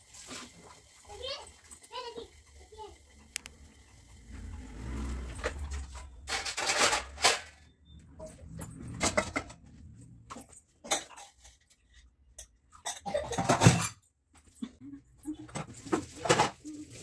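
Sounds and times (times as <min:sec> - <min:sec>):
dishes and utensils clinking: 0:04.4 - 0:17.0.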